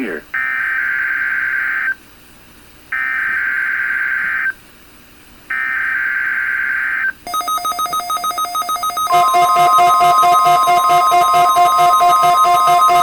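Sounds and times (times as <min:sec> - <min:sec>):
high buzzing data tone: 0:07.3 - 0:13.0
pulsing electronic alert tone: 0:07.3 - 0:13.0.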